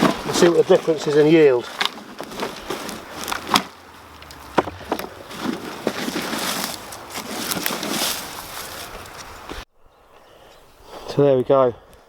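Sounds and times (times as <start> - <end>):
plastic container handled: 0.0 - 9.4
dry compost rustling: 0.0 - 9.6.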